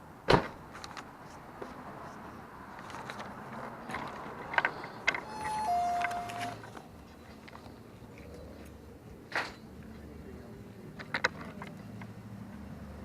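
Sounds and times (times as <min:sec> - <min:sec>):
door chime click: 0:05.2 - 0:06.6
descending electronic chime tones: 0:05.3 - 0:06.6.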